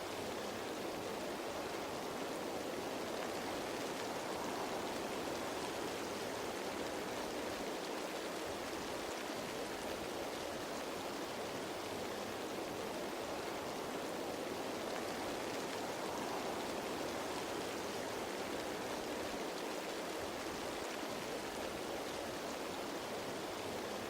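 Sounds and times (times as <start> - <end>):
rain falling on leaves: 0.0 - 24.0.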